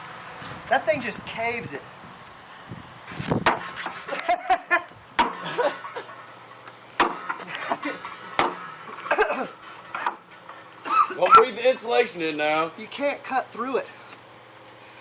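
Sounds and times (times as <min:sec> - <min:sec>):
tomahawk hacking sheet steel: 0:03.1 - 0:04.5, 0:05.2 - 0:06.3, 0:07.0 - 0:10.5.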